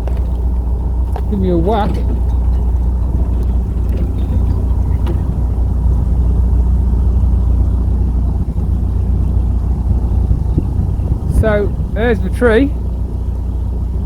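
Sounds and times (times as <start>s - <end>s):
faint knocks: 0.0s - 6.2s
diesel engine low rumble: 0.0s - 14.0s.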